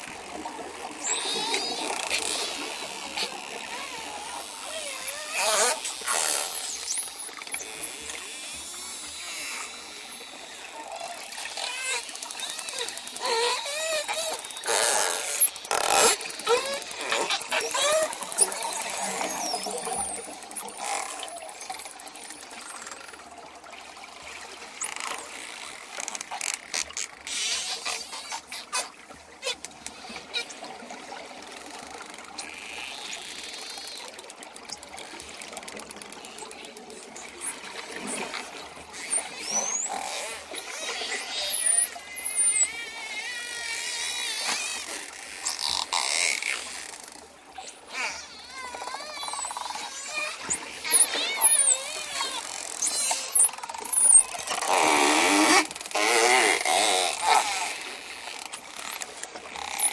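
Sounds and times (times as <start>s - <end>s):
steady underwater hiss: 0.0s - 23.1s
dolphin echolocation clicks: 0.7s - 23.3s, 31.9s - 42.8s, 48.8s - 59.9s
dolphin whistles: 1.0s - 2.7s, 15.2s - 22.4s, 38.4s - 44.1s.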